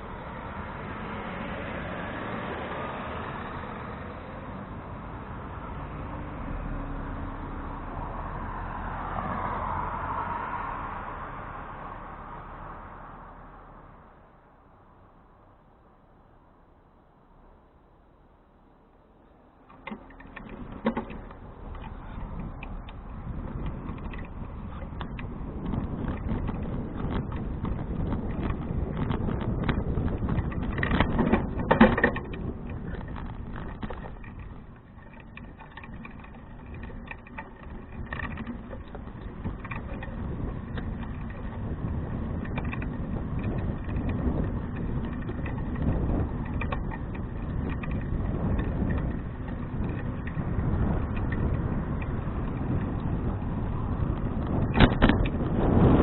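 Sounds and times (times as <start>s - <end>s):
bicycle tyres and wind rumble: 0.0s - 56.0s
bicycle knocks: 19.6s - 56.0s
bicycle rattling clicks: 19.6s - 56.0s.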